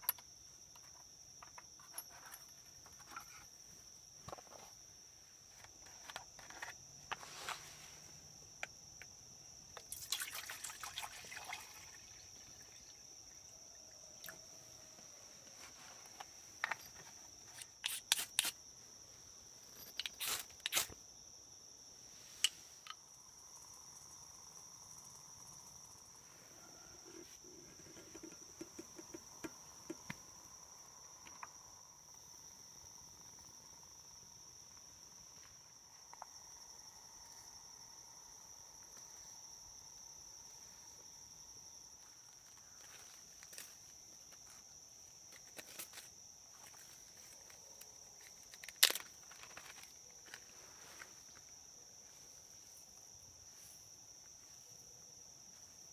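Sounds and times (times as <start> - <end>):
camp gear clicks and knocks: 0.0 - 7.7, 14.2 - 18.6, 19.7 - 21.0, 27.0 - 30.4, 42.3 - 51.5
insects droning: 0.0 - 55.9.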